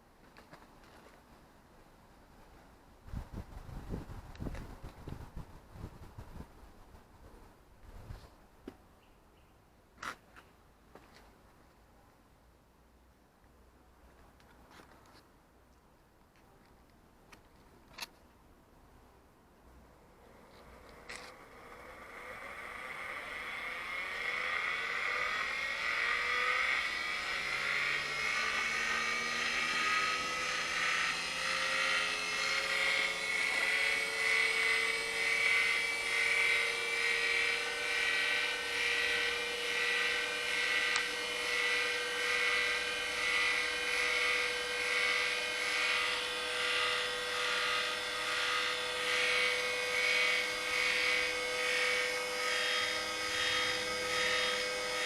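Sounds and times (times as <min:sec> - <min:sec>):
electric motor whine: 0:20.2 - 0:55.0.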